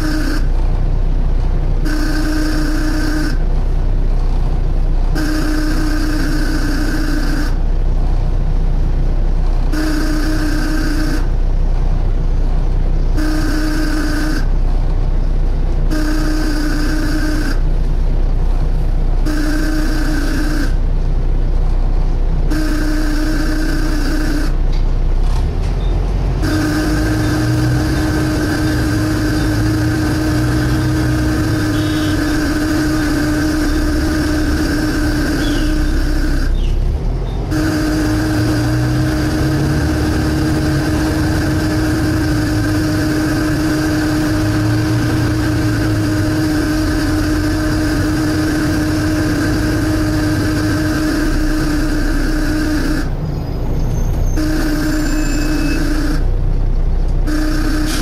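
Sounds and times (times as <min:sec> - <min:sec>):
bus engine rumble: 0:00.0 - 0:58.0
hissing suction whine: 0:26.4 - 0:36.9, 0:37.5 - 0:56.4, 0:57.2 - 0:58.0.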